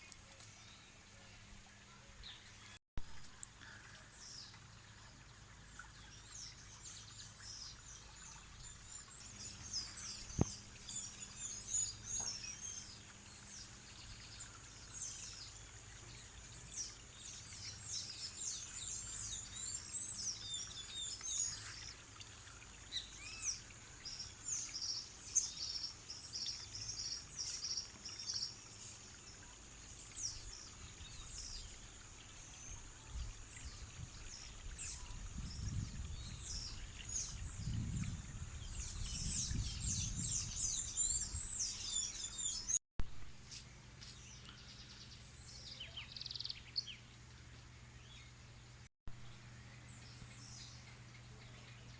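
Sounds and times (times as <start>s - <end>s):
birds chirping: 49.5s - 51.9s.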